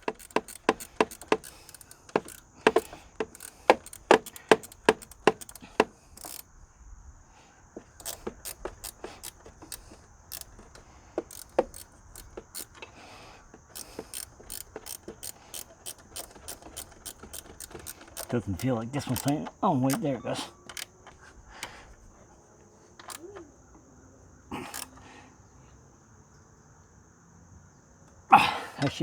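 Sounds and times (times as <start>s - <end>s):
ratchet wrench clicking: 0.0s - 6.5s, 8.0s - 13.0s, 13.6s - 20.1s, 20.7s - 21.0s, 24.7s - 25.0s.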